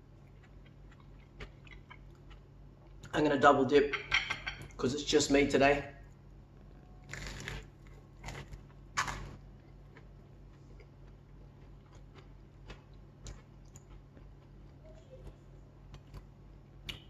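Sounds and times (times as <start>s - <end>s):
low steady hum: 0.0s - 17.0s
person chewing: 0.1s - 3.1s, 6.1s - 17.0s
crunching of fried toast: 7.0s - 14.6s.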